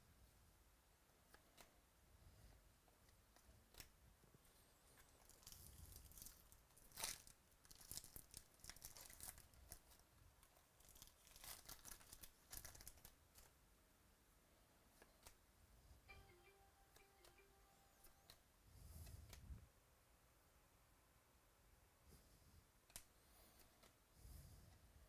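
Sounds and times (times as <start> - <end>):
foil wrappers crinkling and tearing: 5.2 - 10.0, 10.8 - 13.5.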